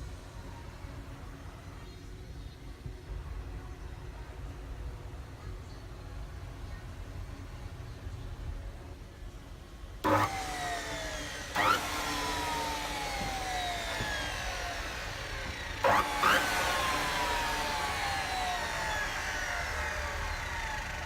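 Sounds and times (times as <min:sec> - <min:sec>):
saw cutting with falling whine: 0:10.0 - 0:21.0.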